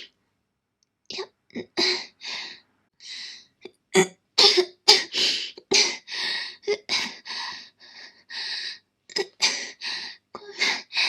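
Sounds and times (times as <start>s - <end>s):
woman coughing hard: 4.0s - 6.1s.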